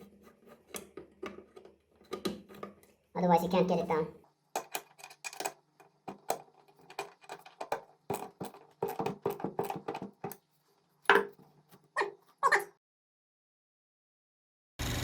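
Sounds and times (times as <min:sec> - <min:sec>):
metal parts clicking and knocking: 0:04.5 - 0:11.4.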